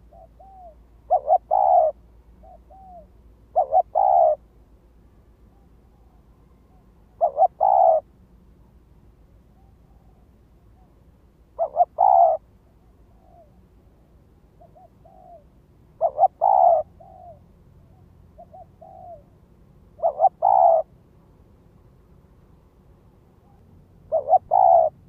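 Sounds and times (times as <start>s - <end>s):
dove cooing: 0.0s - 4.4s, 6.7s - 8.1s, 11.6s - 20.9s, 23.4s - 25.0s.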